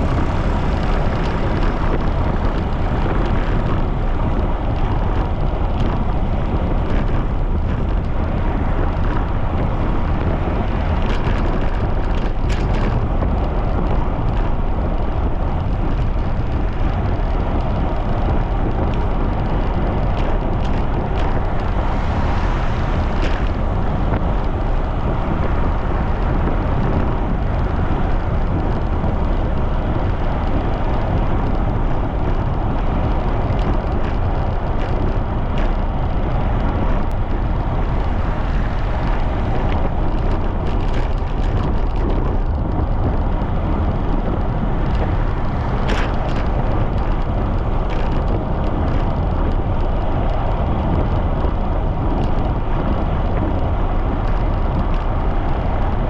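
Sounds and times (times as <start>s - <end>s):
wind rushing over microphone: 0.0s - 56.0s.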